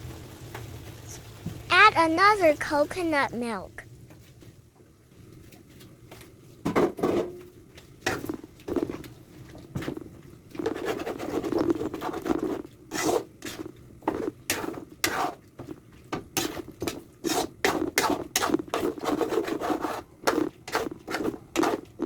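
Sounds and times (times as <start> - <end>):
spoon stirring in a pot: 5.3 - 22.0.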